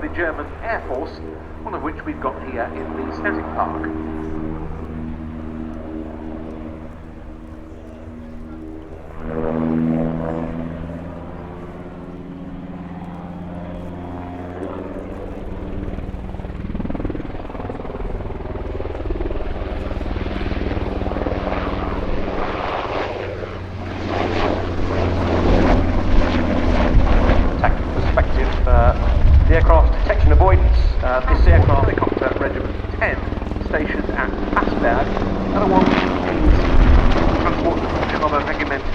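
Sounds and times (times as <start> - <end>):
helicopter engines and rotor chop: 0.0 - 38.9.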